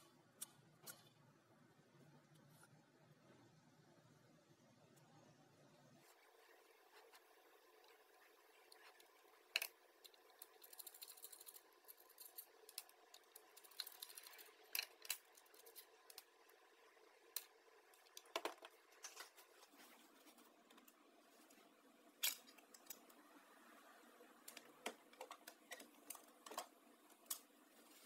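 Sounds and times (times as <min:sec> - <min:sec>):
small parts clicking and rattling: 0:08.8 - 0:16.4.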